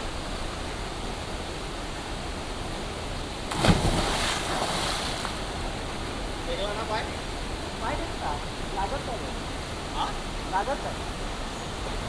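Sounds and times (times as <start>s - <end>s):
loud water splash: 3.5s - 5.4s
steady rain hiss: 4.2s - 12.0s.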